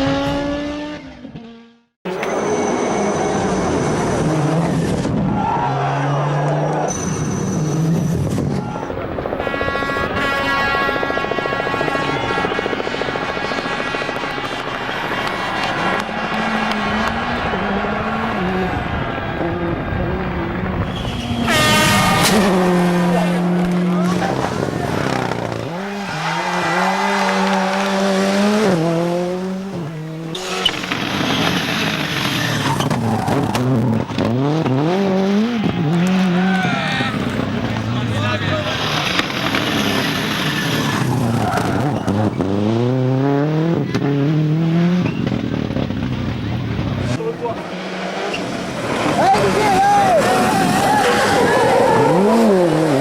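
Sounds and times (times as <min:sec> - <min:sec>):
rally car engine revving: 0:11.0 - 0:53.0.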